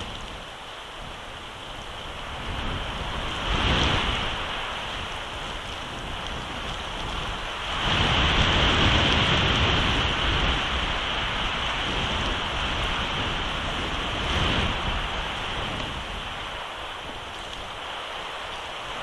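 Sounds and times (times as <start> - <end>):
storm wind on microphone: 0.0 - 19.0.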